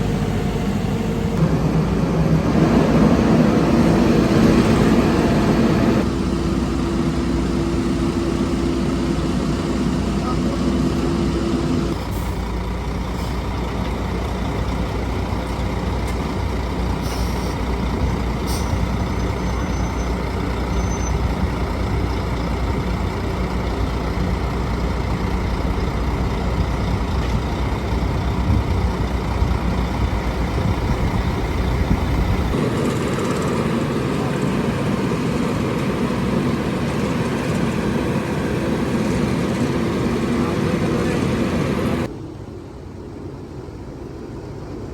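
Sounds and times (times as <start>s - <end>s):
heavy diesel machinery rumbling: 0.0s - 42.1s
rough high machine noise: 24.3s - 42.1s.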